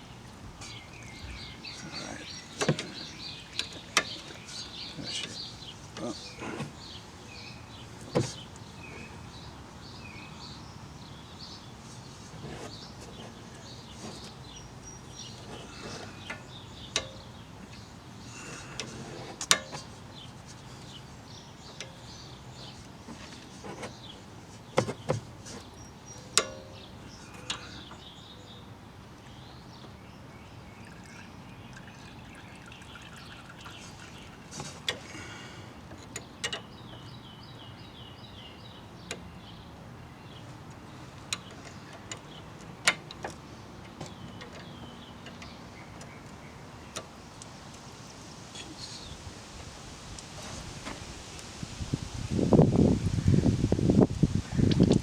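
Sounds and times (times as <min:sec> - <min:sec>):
steady background hiss: 0:00.0 - 0:54.9
clicks and knocks of metal tools: 0:15.2 - 0:17.8, 0:24.8 - 0:28.0, 0:35.9 - 0:37.1.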